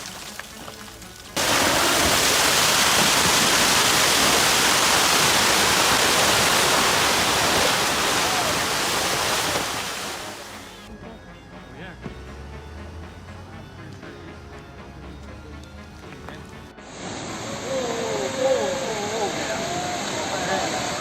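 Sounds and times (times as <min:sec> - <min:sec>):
loud steady rushing noise: 0:16.8 - 0:21.0.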